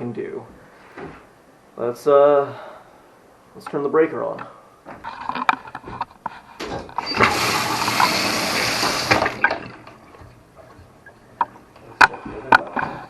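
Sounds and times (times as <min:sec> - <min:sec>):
water spraying from valve: 0:07.0 - 0:09.5.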